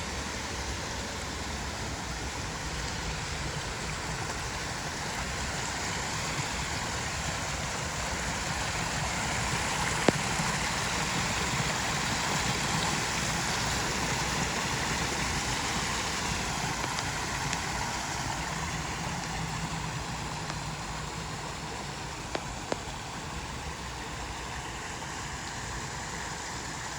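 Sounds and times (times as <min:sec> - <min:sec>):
water pouring down a waterfall: 0:00.0 - 0:26.9.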